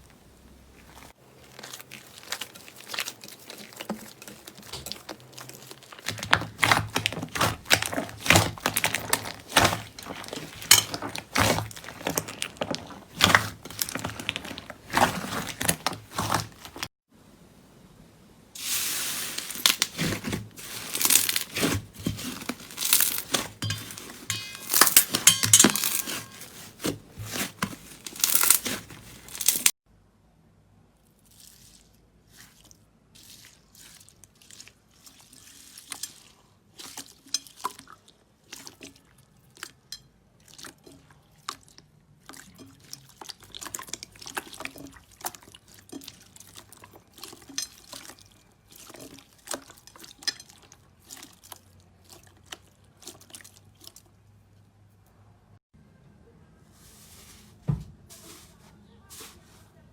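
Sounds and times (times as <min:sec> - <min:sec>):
slime squeezed crackling: 0:00.7 - 0:16.9, 0:18.6 - 0:29.8.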